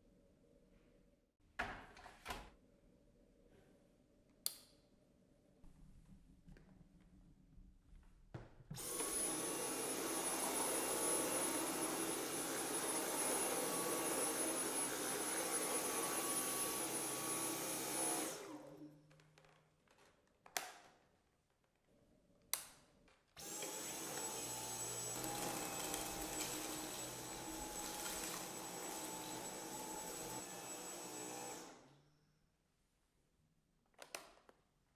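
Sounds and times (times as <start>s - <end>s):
stick vacuum whining: 8.8s - 18.8s, 23.4s - 32.0s.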